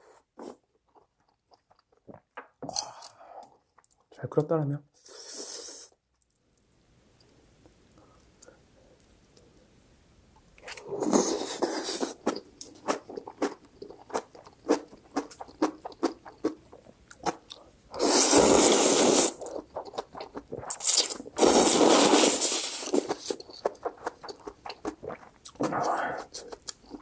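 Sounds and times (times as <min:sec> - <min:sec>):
wet chewing: 0:00.4 - 0:04.1, 0:10.6 - 0:17.7, 0:19.4 - 0:27.0
slurping noodles: 0:05.0 - 0:05.9, 0:10.7 - 0:13.6, 0:17.9 - 0:26.6.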